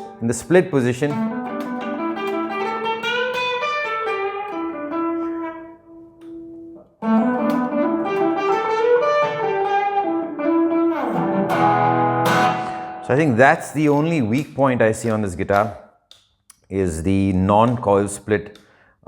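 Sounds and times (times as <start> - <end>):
electric guitar melody: 0.0 - 15.2.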